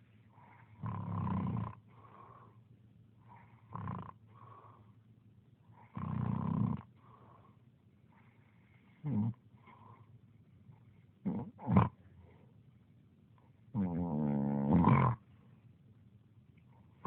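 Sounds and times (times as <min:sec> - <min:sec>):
soft breaths: 0:00.0 - 0:01.0, 0:01.7 - 0:06.2, 0:06.8 - 0:13.7
loud snoring: 0:00.7 - 0:01.8, 0:03.3 - 0:04.6, 0:05.8 - 0:06.9, 0:09.0 - 0:09.4, 0:11.3 - 0:12.0, 0:13.8 - 0:15.2.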